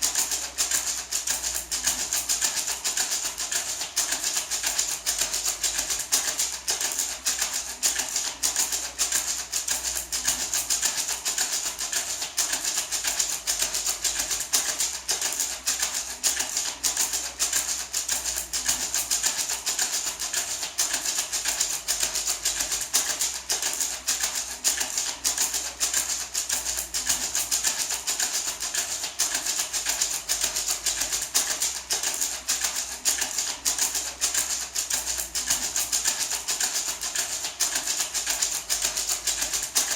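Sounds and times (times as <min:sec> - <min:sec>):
gourd maraca rattling: 0:00.0 - 0:39.9.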